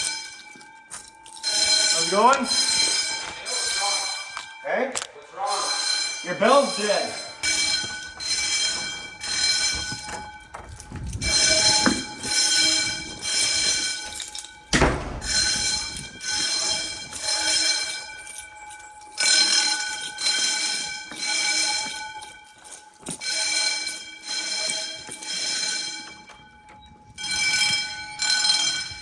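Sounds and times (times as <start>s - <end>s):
fire alarm pulsing tone: 0.0s - 29.0s
loud thump: 14.8s - 15.8s.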